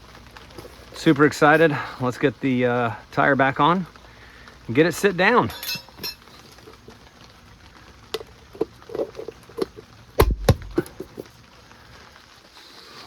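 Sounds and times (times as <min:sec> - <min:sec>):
metal clinks and knocks: 0:05.5 - 0:06.8, 0:08.2 - 0:11.3
heavy thumps: 0:10.2 - 0:11.2.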